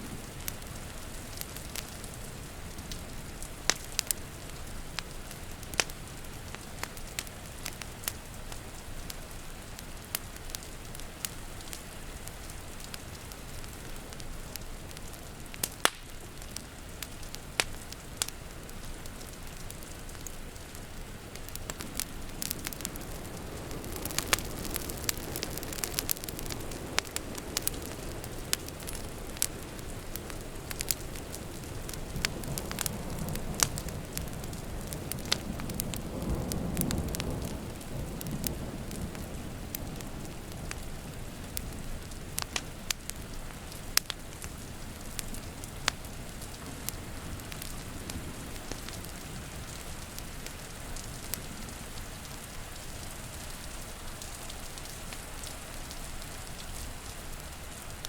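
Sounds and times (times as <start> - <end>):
steady rain: 0.0 - 58.0
wood fire crackling and popping: 0.0 - 58.0
distant thunder rumbling: 21.4 - 41.6.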